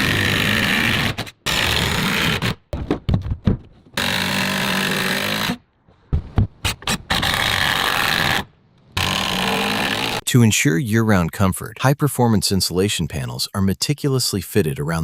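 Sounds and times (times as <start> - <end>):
power tool running: 4.0 - 5.6, 9.0 - 10.2.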